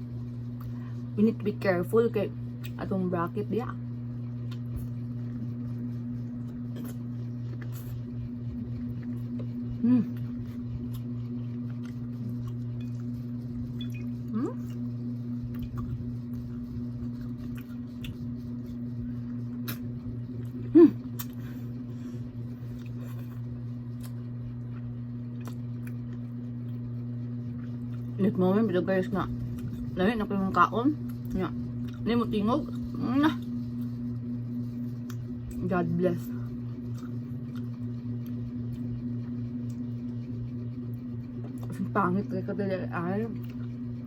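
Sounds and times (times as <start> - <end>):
steady low hum: 0.0 - 44.0
chewing and handling seafood: 4.3 - 28.2, 36.3 - 41.8, 43.3 - 44.0.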